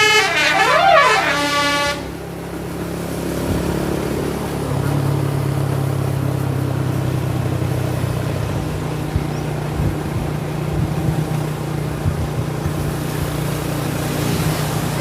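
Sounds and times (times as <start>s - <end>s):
road noise: 0.0s - 15.0s
vehicle engine drone: 0.0s - 15.0s
low thumps: 6.9s - 15.0s.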